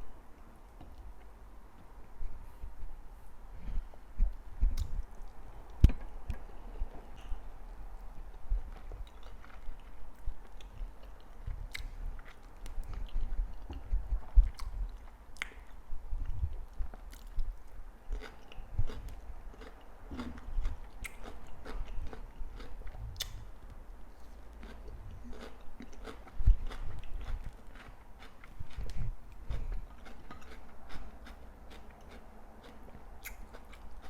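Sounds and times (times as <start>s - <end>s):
chewing and biting food: 8.2s - 23.4s, 24.5s - 34.0s.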